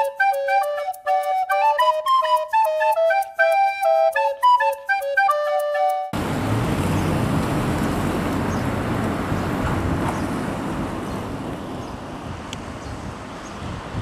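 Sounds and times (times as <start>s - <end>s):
car road and engine noise: 6.1s - 14.0s.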